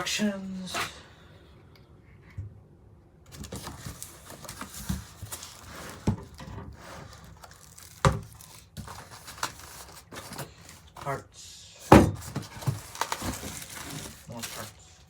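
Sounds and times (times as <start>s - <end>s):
packaging rustling and crinkling: 3.3s - 11.1s, 12.0s - 15.0s.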